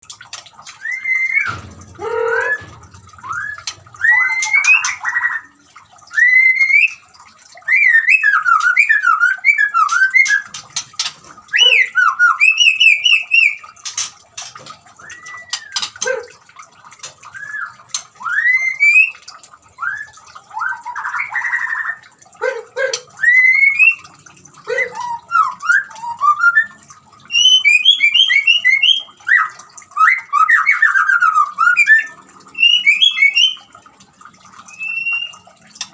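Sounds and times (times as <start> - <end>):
water trickling: 0.0 - 35.9
bird singing whistled phrases: 0.8 - 5.5, 6.1 - 7.0, 7.6 - 10.4, 11.6 - 13.6, 15.0 - 15.9, 17.3 - 19.2, 24.8 - 33.7, 34.7 - 35.4.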